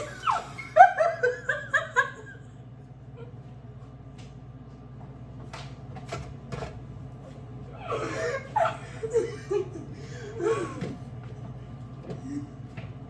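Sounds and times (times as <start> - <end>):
woman laughing: 0.0 - 3.5, 7.8 - 11.0.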